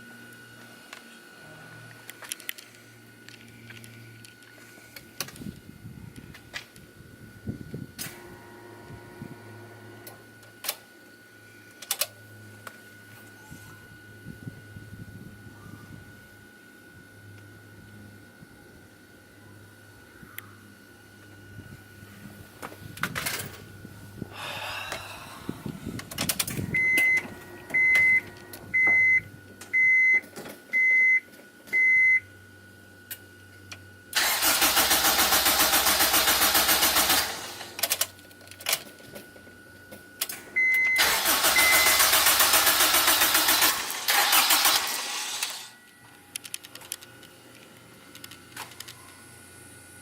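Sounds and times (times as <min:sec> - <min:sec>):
starter cranking engine: 0:34.2 - 0:38.0, 0:41.0 - 0:45.7.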